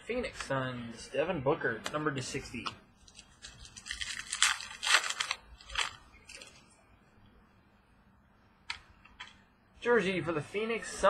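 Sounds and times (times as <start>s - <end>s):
cards and packaging rustling: 3.0s - 6.7s.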